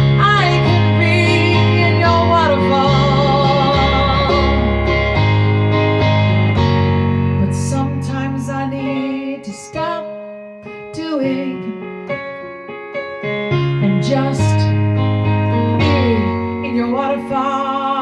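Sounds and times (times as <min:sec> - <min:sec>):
deep bass note: 0:00.0 - 0:08.5
electric piano chords: 0:00.0 - 0:18.0.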